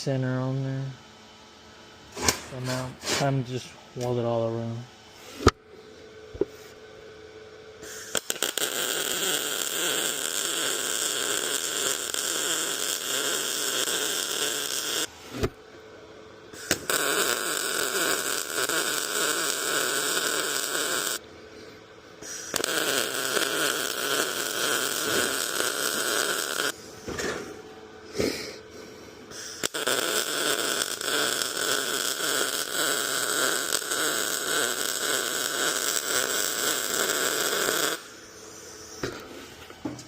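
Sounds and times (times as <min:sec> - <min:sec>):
sputtering arc strikes: 0:07.8 - 0:15.1, 0:16.6 - 0:21.2, 0:29.3 - 0:38.1
arc welding crackling: 0:07.9 - 0:15.1, 0:16.6 - 0:21.2, 0:22.2 - 0:26.8, 0:29.4 - 0:38.2.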